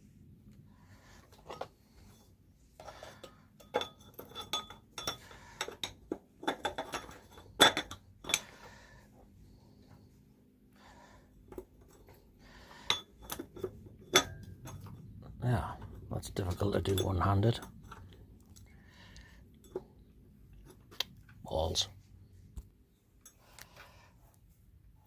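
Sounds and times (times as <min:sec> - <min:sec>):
metal parts clinking: 0:02.8 - 0:08.5.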